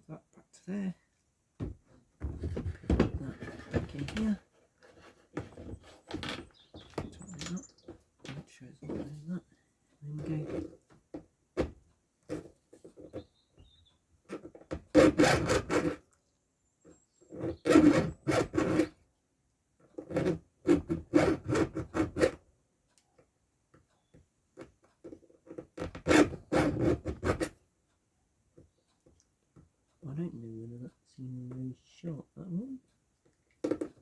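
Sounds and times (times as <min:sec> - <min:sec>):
file rasping on chainsaw chain: 0:10.1 - 0:10.8, 0:14.3 - 0:16.0, 0:17.3 - 0:19.0, 0:20.0 - 0:22.4, 0:25.0 - 0:27.6.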